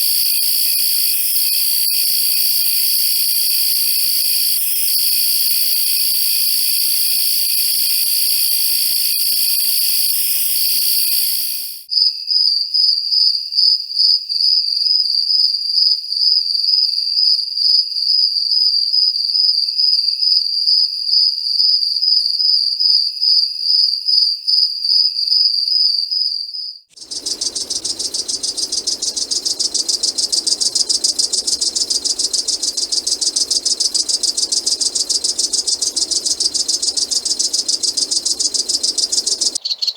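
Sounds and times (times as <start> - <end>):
chorus of crickets and insects: 0.0 - 11.9, 27.0 - 39.9
cricket trilling: 0.0 - 11.9, 27.0 - 39.9
insect rattling buzz: 0.0 - 11.9, 27.0 - 39.9.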